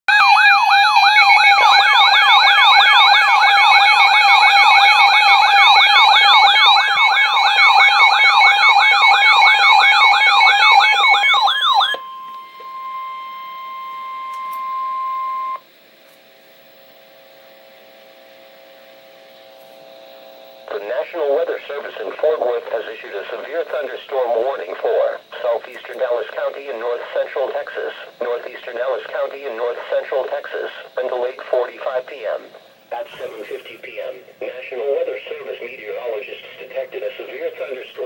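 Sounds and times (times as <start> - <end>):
siren yelping: 0.1 - 15.6
faint hum: 0.2 - 38.0.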